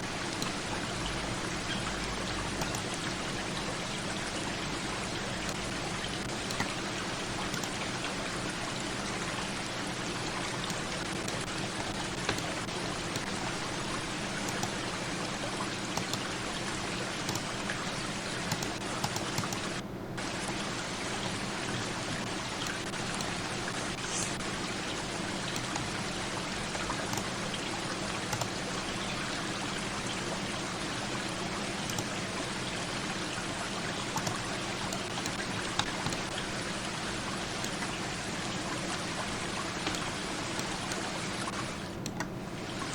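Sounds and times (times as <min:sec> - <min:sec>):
steady hiss of running water: 0:00.0 - 0:42.9
faint ticks: 0:02.6 - 0:03.1, 0:07.4 - 0:07.9, 0:14.4 - 0:14.8, 0:16.0 - 0:16.4, 0:18.4 - 0:19.8, 0:31.9 - 0:32.2.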